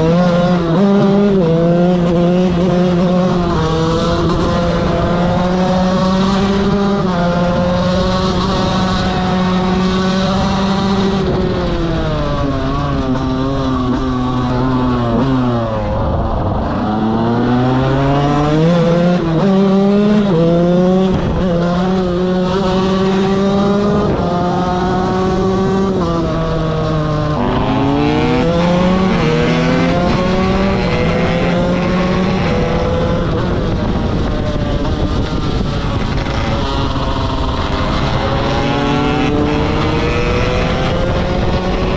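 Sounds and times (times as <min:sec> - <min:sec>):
motorcycle engine at full throttle: 0:00.0 - 0:41.9.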